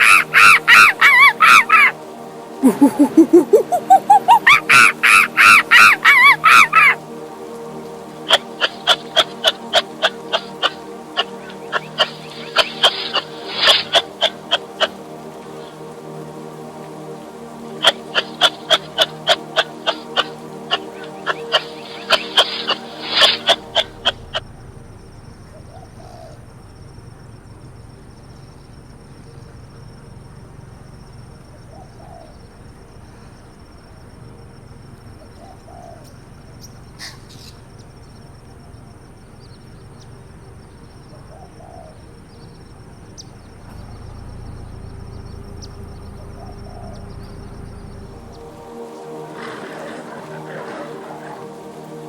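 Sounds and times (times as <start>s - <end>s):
faint high-pitched whine: 0.0s - 52.0s
pigeon cooing: 2.6s - 7.0s, 8.3s - 15.0s, 17.8s - 24.7s, 43.6s - 48.6s, 49.2s - 52.0s
low background rumble: 21.7s - 49.4s.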